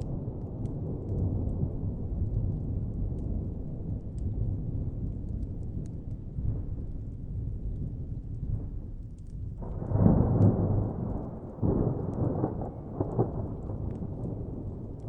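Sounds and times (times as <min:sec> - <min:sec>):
crackling wood fire: 0:00.0 - 0:15.0
distant thunder rumbling: 0:09.6 - 0:15.0.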